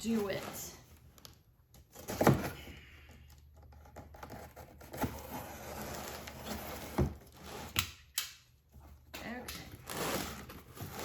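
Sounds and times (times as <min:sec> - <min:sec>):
box rustling and scraping: 0:00.0 - 0:02.8, 0:03.6 - 0:07.8, 0:09.8 - 0:11.0.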